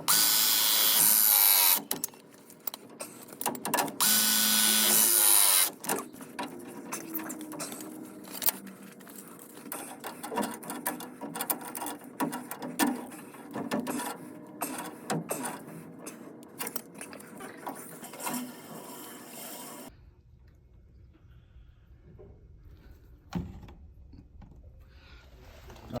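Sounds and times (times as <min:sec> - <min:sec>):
tools and metal fittings clicking: 0:01.4 - 0:04.2, 0:04.8 - 0:18.5.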